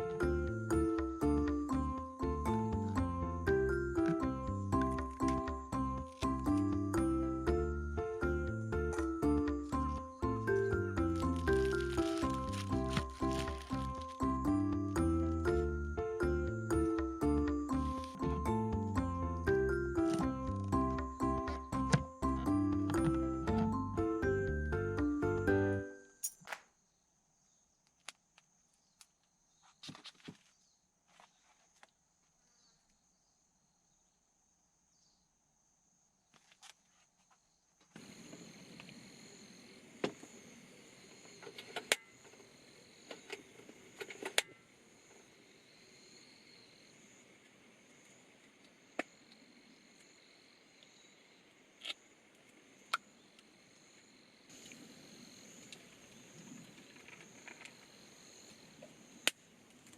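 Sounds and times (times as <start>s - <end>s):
crickets chirring: 8.0s - 18.6s, 35.9s - 59.9s
lower insect trill: 9.1s - 18.3s, 37.5s - 59.4s
background hiss: 37.9s - 59.9s.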